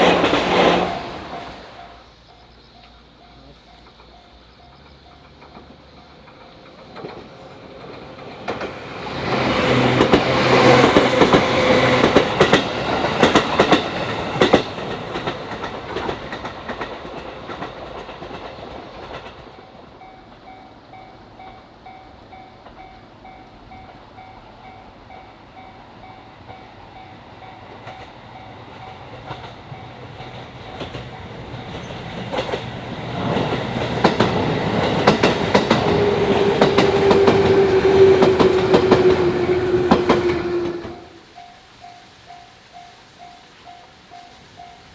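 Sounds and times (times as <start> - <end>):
train wheels clattering over rail joints: 0.0 - 1.7, 2.3 - 41.0
train approaching: 0.0 - 44.9
level crossing warning bell: 41.3 - 44.9.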